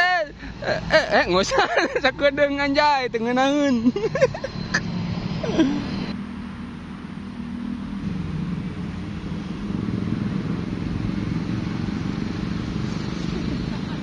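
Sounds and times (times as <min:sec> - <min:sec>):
vehicle engine running: 0:00.3 - 0:14.0.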